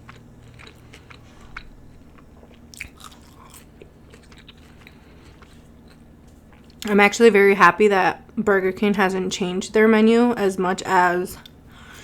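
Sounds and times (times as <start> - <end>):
person chewing and crunching food: 0.0 - 6.9.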